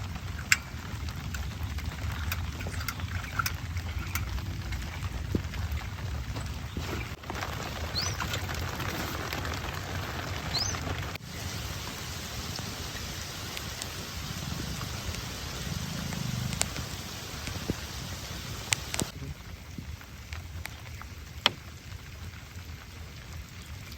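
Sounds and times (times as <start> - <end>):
heavy rain: 0.0 - 23.9
raindrops clicking close by: 0.0 - 23.9.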